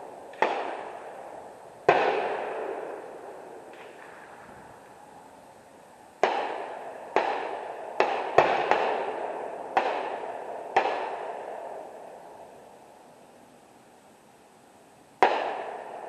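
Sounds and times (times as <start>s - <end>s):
gunshots with echo: 0.3s - 1.0s, 1.9s - 4.6s, 6.2s - 11.7s, 15.2s - 16.0s.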